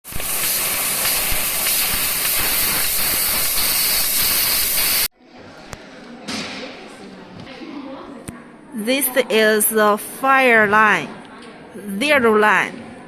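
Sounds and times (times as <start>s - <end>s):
loud gas hiss at laser cutter: 0.0s - 5.1s.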